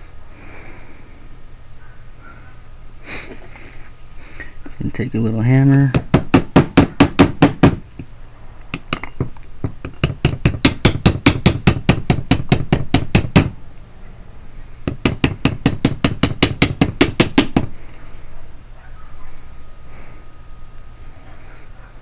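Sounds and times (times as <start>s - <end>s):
small hammer tapping metal: 8.7s - 13.5s.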